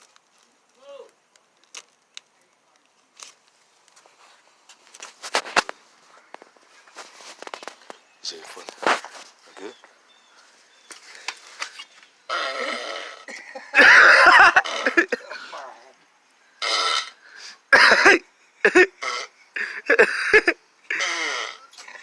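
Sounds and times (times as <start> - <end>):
fart and burp sound effects: 12.3 - 13.3, 14.4 - 15.2, 16.6 - 17.2, 18.8 - 19.3, 20.9 - 22.0.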